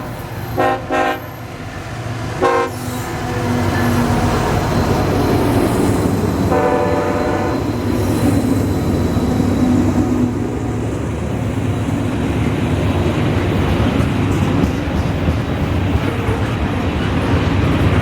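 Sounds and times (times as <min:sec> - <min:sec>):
locomotive air horn blast: 0:00.0 - 0:01.4, 0:02.4 - 0:03.8, 0:06.5 - 0:07.8
train rumbling past: 0:00.0 - 0:18.0.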